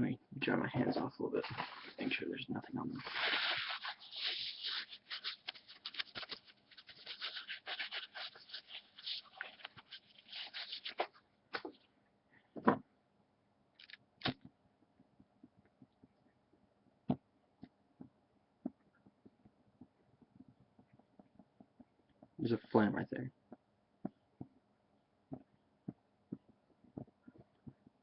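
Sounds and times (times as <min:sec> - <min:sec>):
hands being wiped dry: 0:03.0 - 0:11.1.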